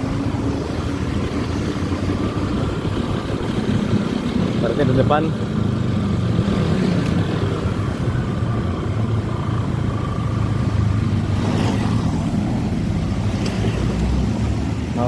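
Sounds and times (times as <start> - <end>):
road and wind noise: 0.0 - 15.0
scooter engine running: 0.0 - 15.0.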